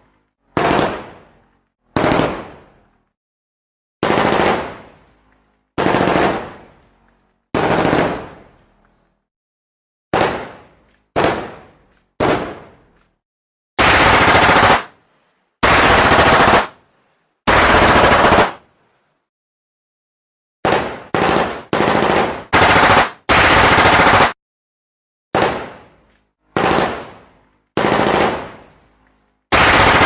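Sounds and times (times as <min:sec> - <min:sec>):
automatic gunfire bursts: 0:02.0 - 0:02.5, 0:04.0 - 0:04.8, 0:05.8 - 0:06.6, 0:07.6 - 0:08.4, 0:13.8 - 0:14.9, 0:15.6 - 0:16.7, 0:17.5 - 0:18.6, 0:20.6 - 0:24.4, 0:26.6 - 0:27.1, 0:27.8 - 0:28.6, 0:29.5 - 0:30.0.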